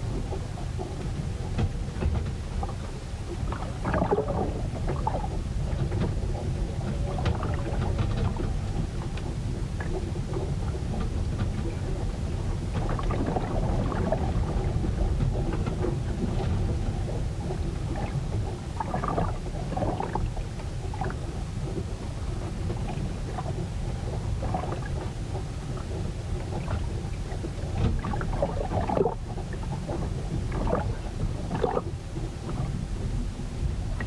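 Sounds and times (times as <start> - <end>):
deep rumble of wind and waves: 0.0 - 34.0
water splashing and knocking: 27.8 - 29.3, 29.9 - 31.8.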